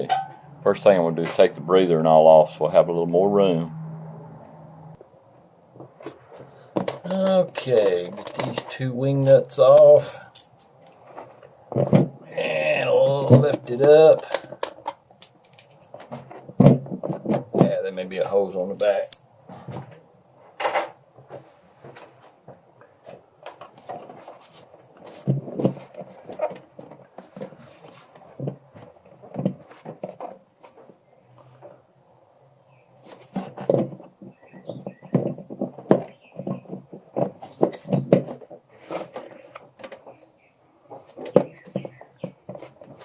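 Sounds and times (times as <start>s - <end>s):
plastic housing clunks and rattles: 5.8s - 9.4s, 13.3s - 17.8s.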